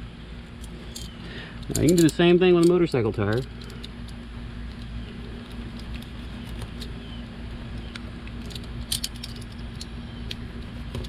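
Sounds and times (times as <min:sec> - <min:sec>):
steady low hum: 0:00.0 - 0:11.0
metallic clatter: 0:00.6 - 0:04.2, 0:08.4 - 0:09.9
small metallic clicks: 0:00.6 - 0:07.0, 0:07.7 - 0:10.4.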